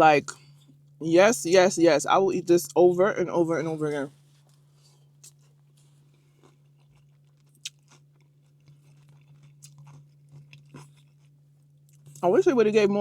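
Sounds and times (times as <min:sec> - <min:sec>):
low hum: 0:00.0 - 0:13.0
chewing and crunching food: 0:03.6 - 0:12.8.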